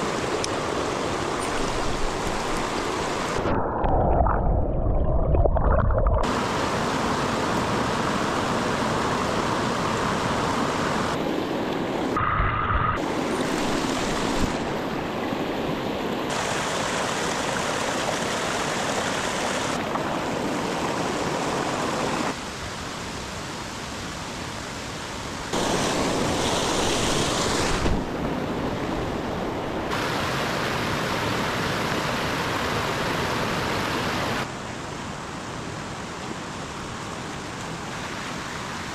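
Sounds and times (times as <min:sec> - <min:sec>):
mountain stream rushing: 0:00.0 - 0:03.7, 0:06.1 - 0:12.2, 0:13.0 - 0:38.9.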